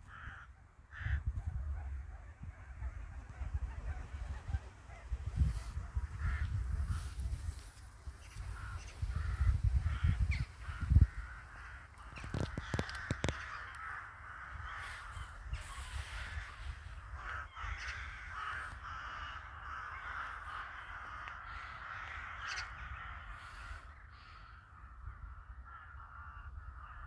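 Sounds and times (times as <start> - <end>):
crows cawing: 0.0 - 1.6, 6.0 - 7.4, 8.2 - 27.0.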